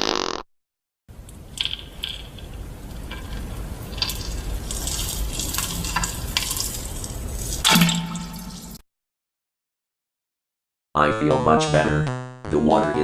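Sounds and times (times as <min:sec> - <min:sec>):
noisy hiss with splats: 0:01.1 - 0:08.8.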